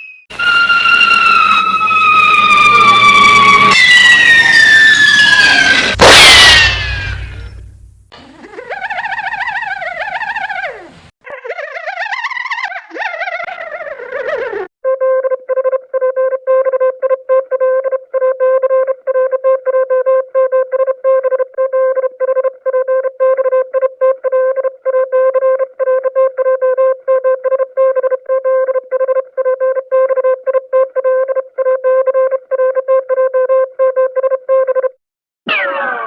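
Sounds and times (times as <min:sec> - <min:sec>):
cartoon horn staccato pulses: 0:05.9 - 0:07.7.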